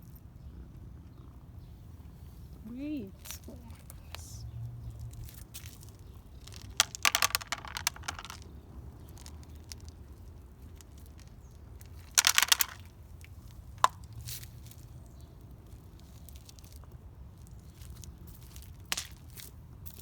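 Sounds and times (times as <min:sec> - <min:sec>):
cat crunching dry food: 0:05.0 - 0:14.6.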